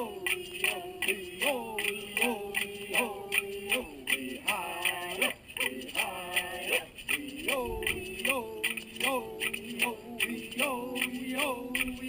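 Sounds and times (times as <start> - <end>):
man singing: 0.0 - 12.0
beat of sharp clicks: 7.1 - 12.0.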